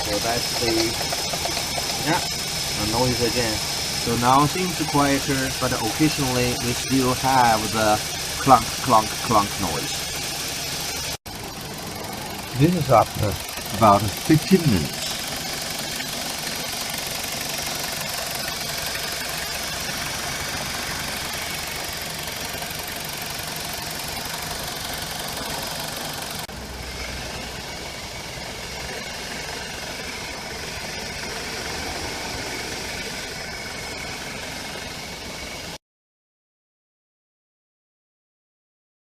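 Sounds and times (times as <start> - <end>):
car engine idling: 0.0 - 35.8
fast ticking of belt pulleys: 0.0 - 35.8
pulley clunk: 0.2 - 2.4.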